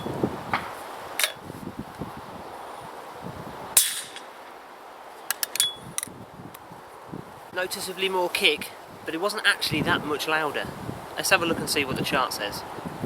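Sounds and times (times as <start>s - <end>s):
suppressed shotgun shot: 3.8s - 4.3s.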